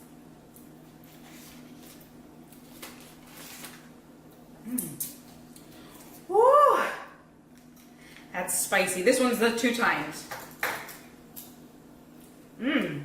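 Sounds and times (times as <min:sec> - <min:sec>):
person humming mm: 0:04.6 - 0:05.1, 0:12.6 - 0:13.0.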